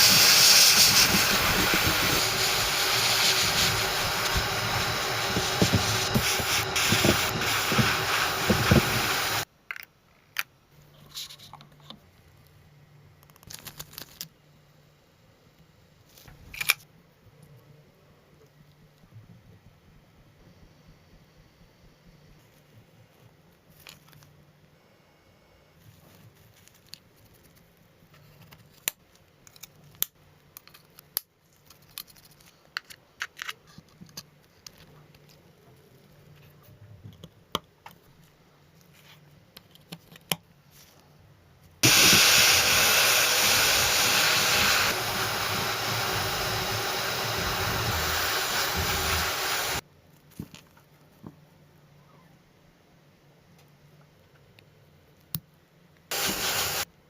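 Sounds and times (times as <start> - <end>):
air tool hissing: 0.0 - 9.5, 41.8 - 49.8, 56.1 - 56.9.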